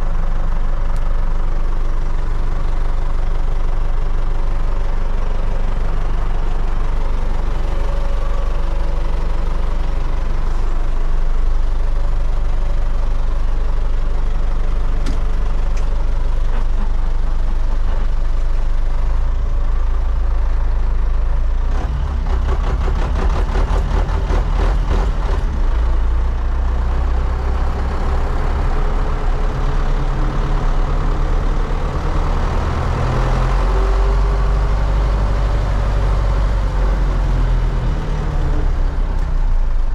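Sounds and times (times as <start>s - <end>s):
diesel tractor engine running: 0.0s - 39.9s
rapid engine clatter: 0.0s - 39.9s.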